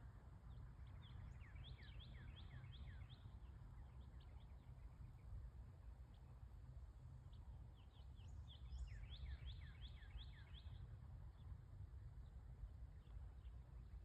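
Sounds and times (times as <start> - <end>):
low steady rumble: 0.0 - 14.0
songbird song: 0.0 - 14.0
bird chirps: 0.8 - 5.2, 8.0 - 10.8.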